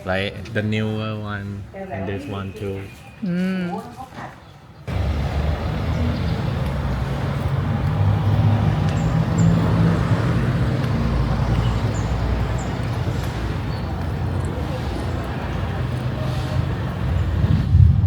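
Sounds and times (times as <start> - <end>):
road noise: 0.0 - 18.0
car engine drone: 4.9 - 18.0.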